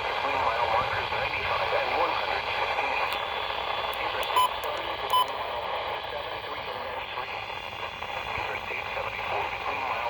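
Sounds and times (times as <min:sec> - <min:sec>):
radio static: 0:00.0 - 0:10.0
short electronic beeps: 0:03.2 - 0:05.4.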